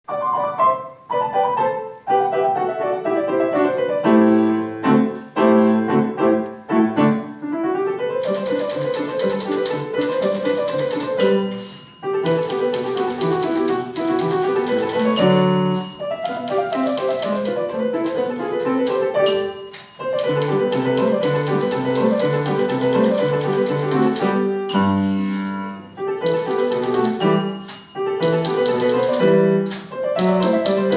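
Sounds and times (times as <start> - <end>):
piano instrumental music: 0.1 - 30.9
fast crisp ticking: 8.2 - 25.0, 26.1 - 30.9.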